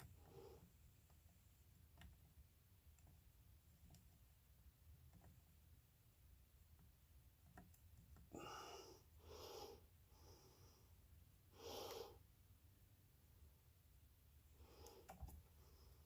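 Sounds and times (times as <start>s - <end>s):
person breathing out hard: 8.3s - 10.9s.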